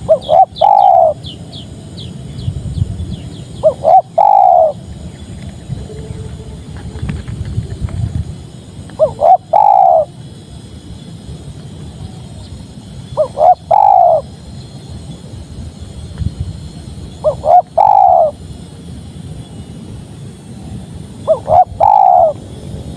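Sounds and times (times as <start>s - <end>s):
dove cooing: 0.0s - 1.3s, 3.6s - 4.9s, 9.0s - 10.2s, 13.1s - 14.3s, 17.2s - 18.4s, 21.2s - 22.4s.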